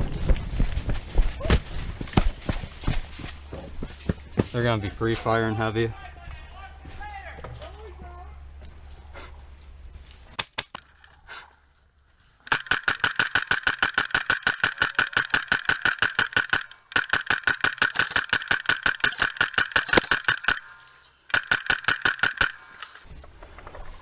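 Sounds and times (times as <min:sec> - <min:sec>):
airsoft gun firing bursts: 0:12.5 - 0:23.1.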